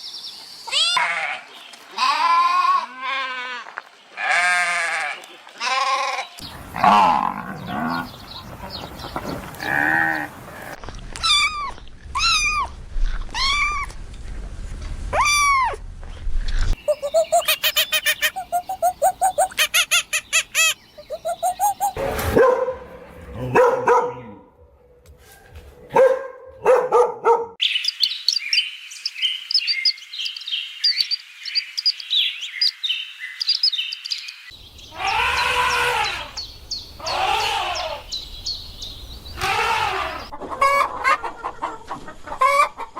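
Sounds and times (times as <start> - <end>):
repeated animal calls: 5.6 - 12.6, 16.8 - 22.0, 34.8 - 38.2, 39.3 - 40.8
high chirping: 16.8 - 22.0
lower animal calls: 16.8 - 22.0, 34.9 - 36.4, 37.0 - 38.2.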